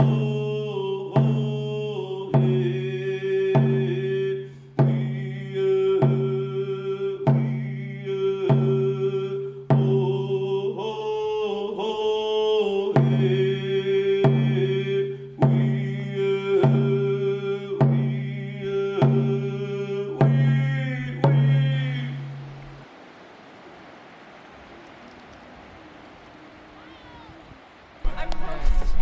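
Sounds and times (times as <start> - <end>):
slow steady drumbeat: 0.0 - 10.9, 12.9 - 22.8, 28.1 - 29.0
person chanting: 0.0 - 22.2, 28.0 - 29.0.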